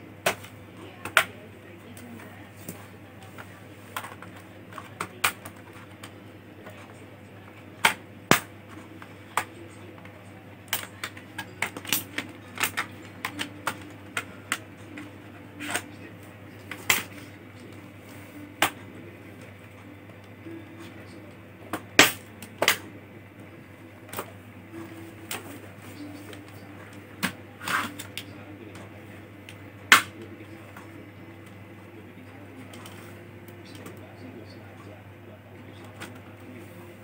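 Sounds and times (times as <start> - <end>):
plastic laptop casing clicks: 10.7 - 14.6.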